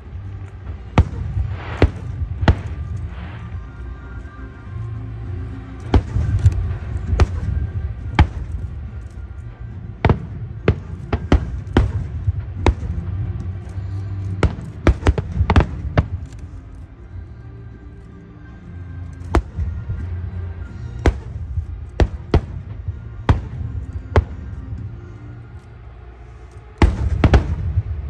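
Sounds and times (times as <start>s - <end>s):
low rumble: 0.0s - 17.8s
fireworks bangs: 0.6s - 4.4s, 5.8s - 16.4s, 26.8s - 28.0s.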